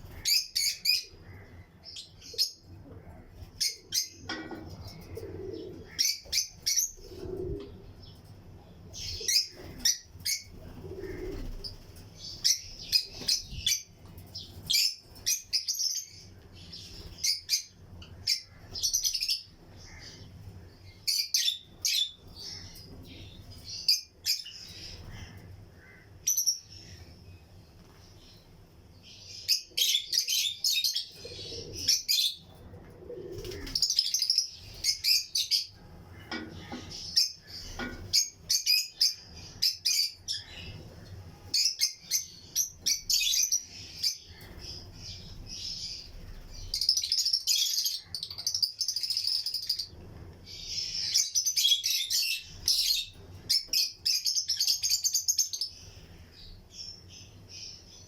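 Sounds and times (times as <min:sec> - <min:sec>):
lovebirds chirping: 0:00.0 - 0:58.0.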